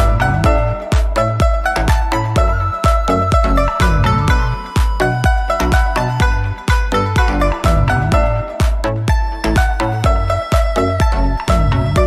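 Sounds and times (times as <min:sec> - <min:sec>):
electronic dance music: 0:00.0 - 0:12.0
thumping bass beat: 0:00.0 - 0:12.0
bright synth notes: 0:01.7 - 0:09.5.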